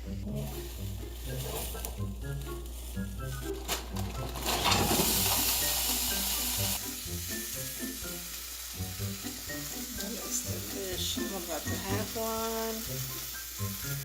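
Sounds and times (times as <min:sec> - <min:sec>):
food sizzling in a pot: 0:00.0 - 0:14.0.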